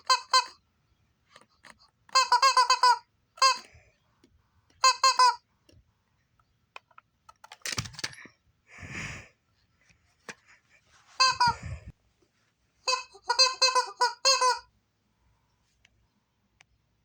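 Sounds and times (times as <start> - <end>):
chicken calling: 11.1 - 11.9, 12.8 - 14.7.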